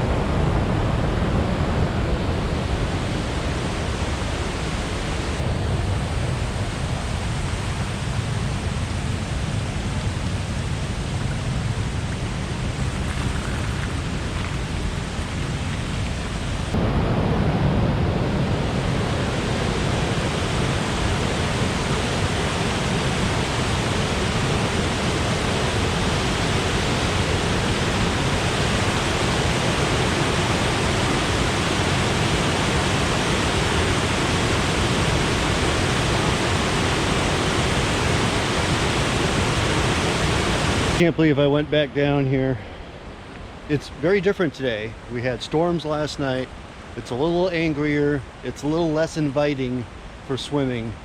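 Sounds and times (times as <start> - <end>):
waterfall rushing: 0.0 - 41.1, 42.8 - 51.0.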